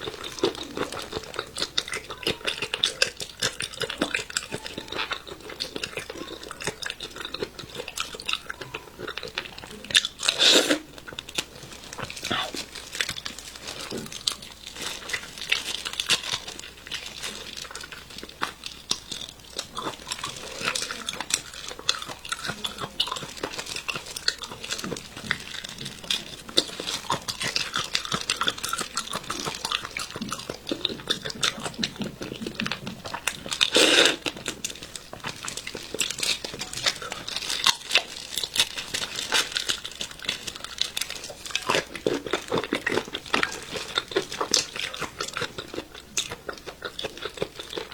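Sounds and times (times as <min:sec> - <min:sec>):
chewing: 0:00.0 - 0:47.9
prawn shells crackling and tearing: 0:00.0 - 0:47.9.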